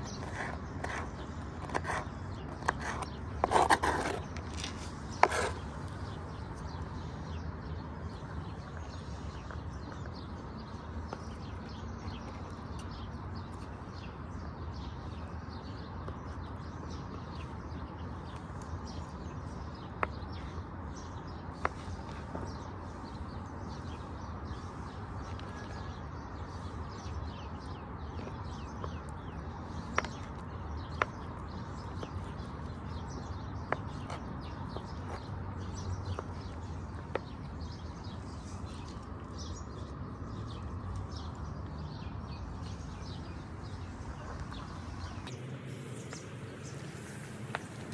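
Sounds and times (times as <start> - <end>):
birds chirping: 0.0 - 47.9
outdoor background hiss: 43.0 - 47.9.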